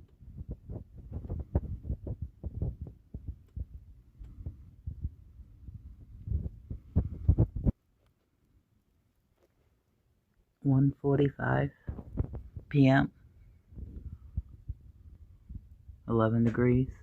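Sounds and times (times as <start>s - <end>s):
wind buffeting microphone: 0.2s - 7.8s, 11.9s - 12.8s, 13.6s - 16.1s.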